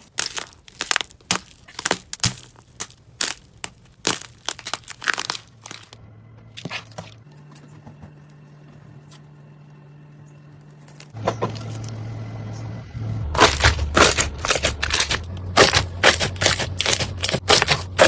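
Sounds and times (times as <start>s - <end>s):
slime squeezed crackling popping: 0.0s - 6.0s.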